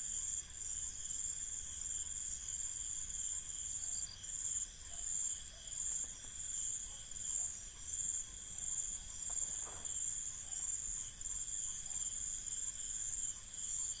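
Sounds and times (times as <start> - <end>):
cricket pulsing chirp: 0.0 - 14.0
crickets trilling: 0.0 - 14.0.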